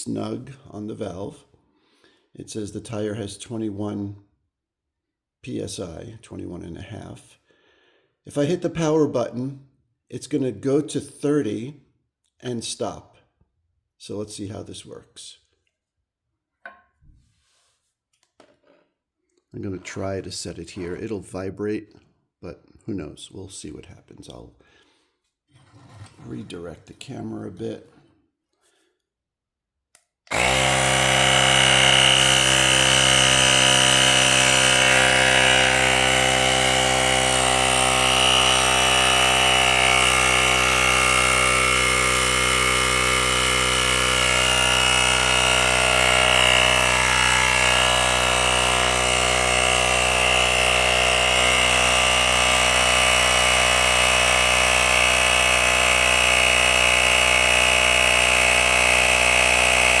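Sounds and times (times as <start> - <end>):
tire inflator compressor whining: 30.3 - 60.0.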